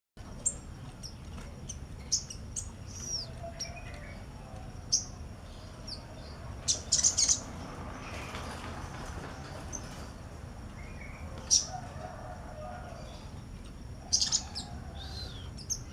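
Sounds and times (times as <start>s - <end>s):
bird chirping: 0.2s - 8.4s, 14.0s - 15.9s.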